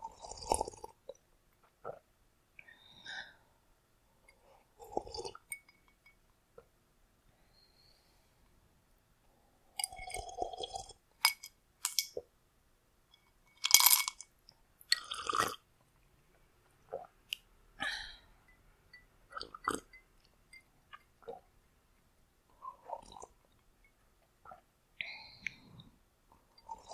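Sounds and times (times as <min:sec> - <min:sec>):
person gulping water: 0:04.8 - 0:05.5, 0:14.9 - 0:15.6, 0:22.6 - 0:23.5.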